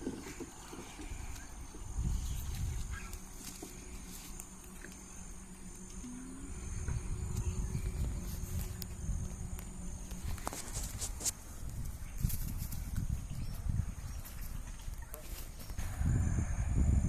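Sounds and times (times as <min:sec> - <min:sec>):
insects chirping: 0:00.0 - 0:17.0
low rumble: 0:04.5 - 0:12.1.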